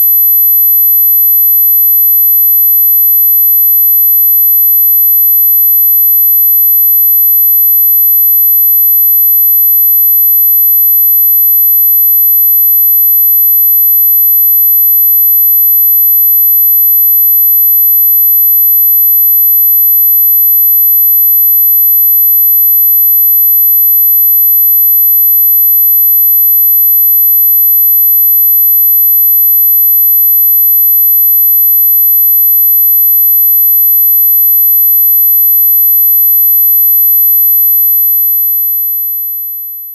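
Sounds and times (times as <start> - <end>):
high-pitched sine tone: 0.0 - 39.9.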